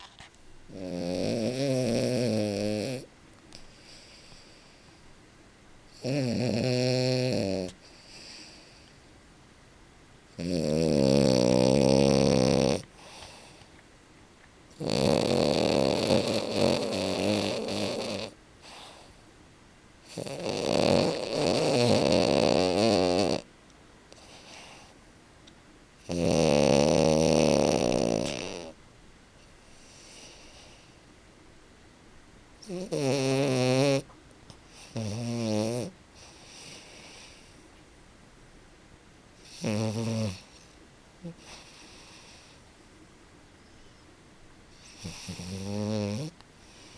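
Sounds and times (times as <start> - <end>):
dog snoring loudly: 0.7 - 3.1, 5.9 - 8.8, 10.3 - 13.6, 14.7 - 19.1, 20.0 - 23.5, 24.2 - 24.9, 26.0 - 28.8, 29.7 - 30.9, 32.6 - 34.1, 34.7 - 37.6, 39.4 - 42.6, 44.7 - 46.9
faint airy breaths: 3.0 - 6.1, 7.6 - 9.5, 12.8 - 13.9, 16.2 - 22.1, 24.1 - 25.2, 27.8 - 31.6, 34.0 - 35.1, 35.9 - 38.0, 40.3 - 46.9.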